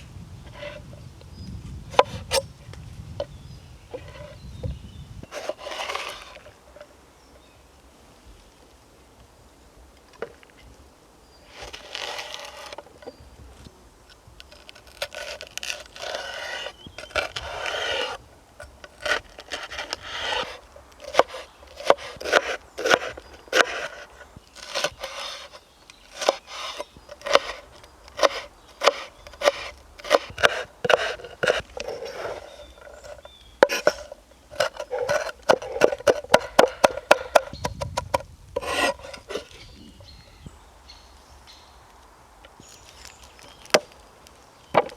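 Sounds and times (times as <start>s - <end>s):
scraping strokes on wood: 0.5s - 0.9s, 1.9s - 2.4s, 3.9s - 4.4s, 5.3s - 6.9s, 11.5s - 13.2s, 14.5s - 39.8s.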